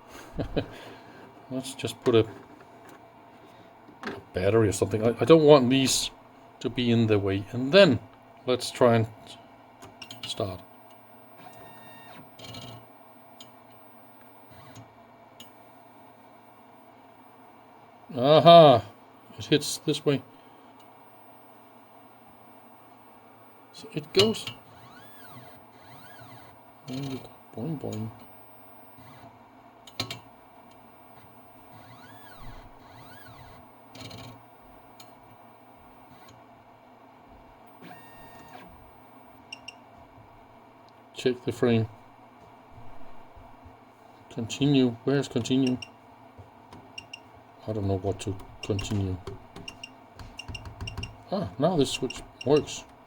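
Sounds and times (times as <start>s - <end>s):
faint motor clicks: 9.2s - 17.5s, 19.3s - 36.4s, 37.7s - 39.8s, 45.4s - 51.2s
steady tone: 10.1s - 14.8s, 15.4s - 29.3s, 29.9s - 36.2s, 37.7s - 39.4s.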